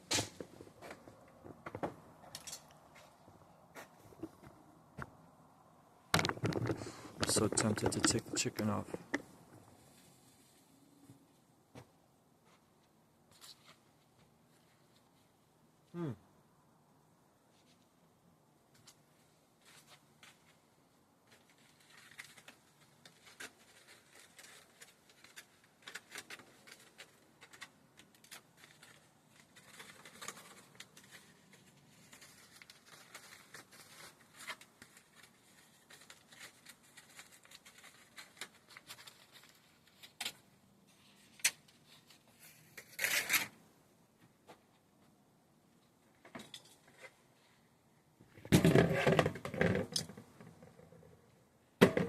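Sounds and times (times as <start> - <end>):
rustling: 6.2 - 11.5, 18.7 - 43.6.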